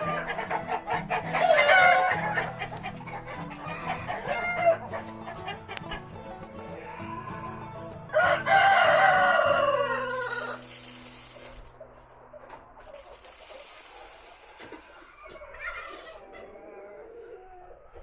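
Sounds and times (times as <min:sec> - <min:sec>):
chickens clucking: 0:00.0 - 0:18.0
rooster crowing: 0:01.1 - 0:02.6, 0:03.4 - 0:05.0, 0:08.1 - 0:11.2.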